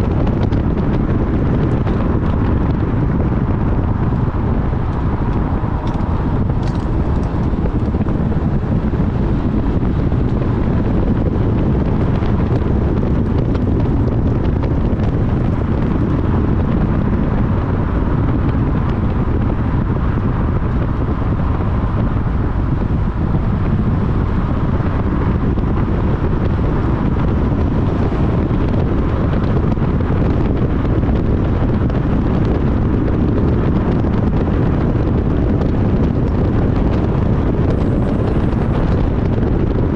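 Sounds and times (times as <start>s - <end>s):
car driving low rumble: 0.0s - 39.9s
wind on microphone: 0.0s - 39.9s.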